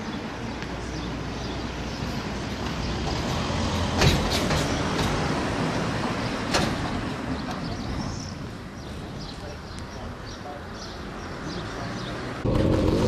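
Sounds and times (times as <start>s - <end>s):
sharp knocks: 4.0s - 5.2s.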